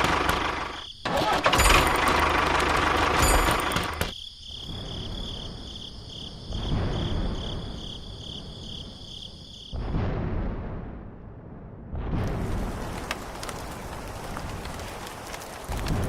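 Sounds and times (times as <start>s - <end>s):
crickets chirping trill: 0.1s - 9.9s
low rumble: 9.8s - 15.1s.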